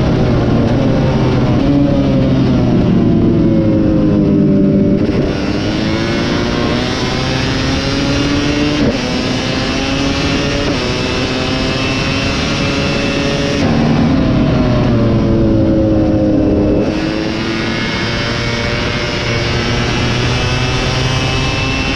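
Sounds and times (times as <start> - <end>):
motocross engine revving: 4.8 - 21.9.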